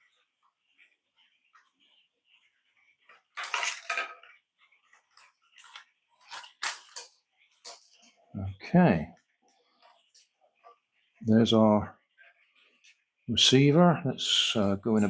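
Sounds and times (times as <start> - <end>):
plastic toy parts clattering: 3.4 - 4.3, 5.6 - 7.8.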